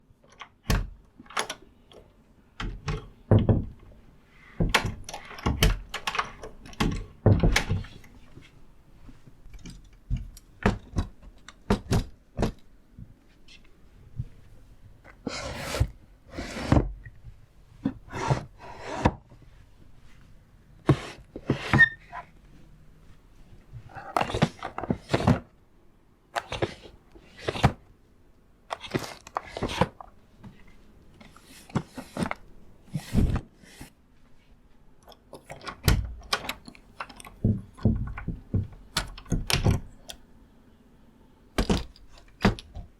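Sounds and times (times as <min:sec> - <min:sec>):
drawer scraping slides: 0:15.1 - 0:17.0, 0:17.8 - 0:19.3, 0:20.8 - 0:22.3, 0:24.1 - 0:25.5, 0:31.2 - 0:33.9
latch clicks and door thuds: 0:35.5 - 0:40.2.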